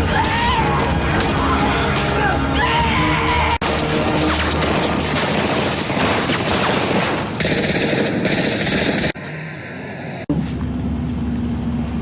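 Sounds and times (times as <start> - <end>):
rapid gunfire: 3.6 - 9.2.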